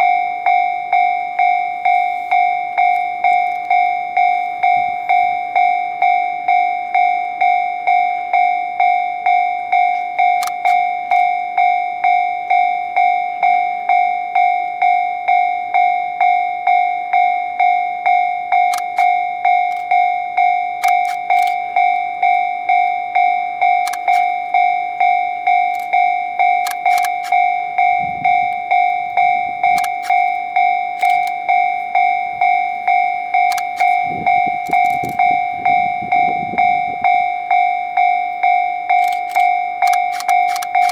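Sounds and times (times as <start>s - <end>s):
level-crossing alarm ding: 0.0s - 40.9s
sharp clicks: 9.8s - 11.3s, 18.6s - 20.0s, 20.8s - 21.9s, 23.6s - 24.6s, 25.5s - 40.9s.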